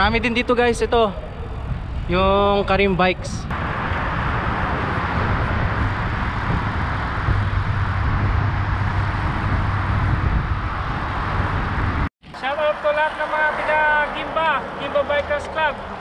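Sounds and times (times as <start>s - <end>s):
road traffic: 0.0s - 16.0s
wind: 0.0s - 16.0s
low engine hum: 3.5s - 12.1s.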